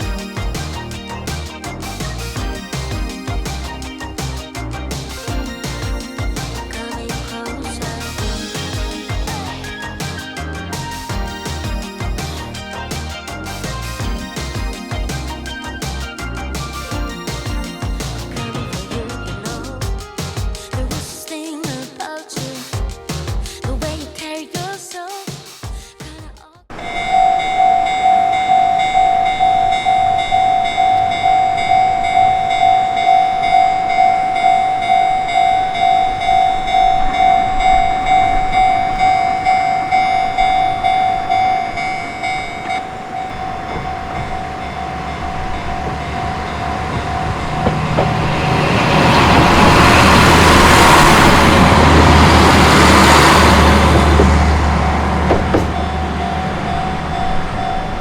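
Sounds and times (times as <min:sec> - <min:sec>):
level crossing warning bell ringing: 0:00.0 - 0:19.7, 0:26.7 - 0:58.0
train passing with rumble: 0:28.1 - 0:58.0.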